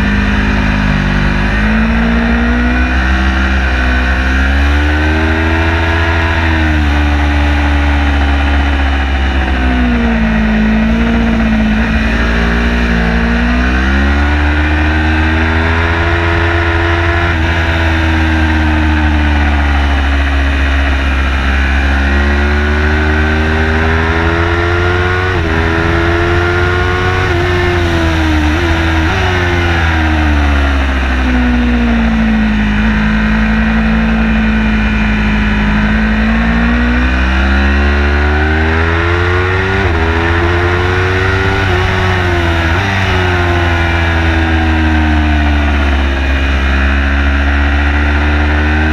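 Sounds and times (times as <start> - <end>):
car engine accelerating: 0.0 - 48.9
wind and road noise: 0.0 - 48.9.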